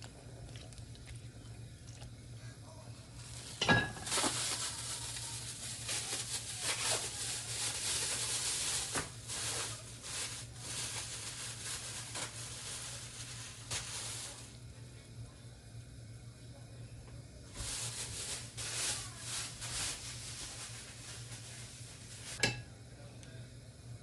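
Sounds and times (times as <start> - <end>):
food sizzling in a pot: 3.2 - 14.6, 17.5 - 22.7.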